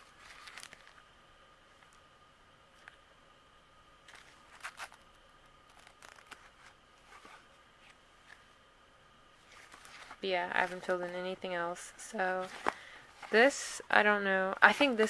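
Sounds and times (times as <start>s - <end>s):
album pages rustling: 0.0s - 1.1s, 4.0s - 8.5s, 9.4s - 11.4s, 12.2s - 13.6s
faint steady hum: 0.0s - 15.0s.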